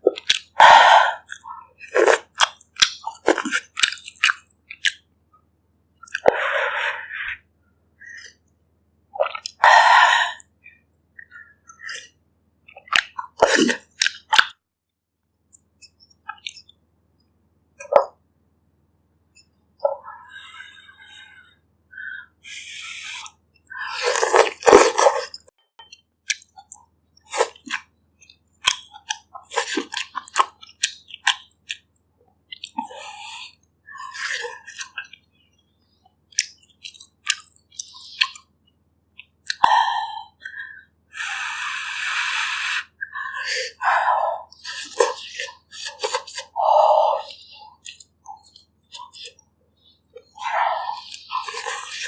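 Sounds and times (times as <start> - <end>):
chewing and wet mouth sounds: 0.0 - 5.1, 6.0 - 6.4, 9.2 - 9.7, 11.2 - 14.6, 15.4 - 16.8, 22.8 - 40.6, 42.8 - 52.0.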